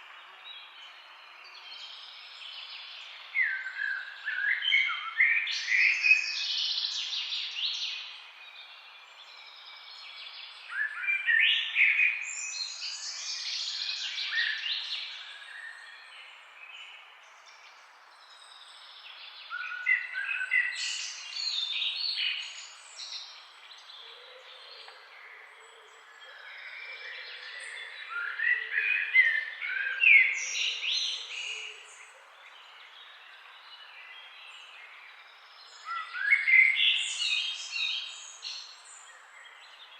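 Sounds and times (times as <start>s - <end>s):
songbirds singing and chirping: 0.0s - 39.9s.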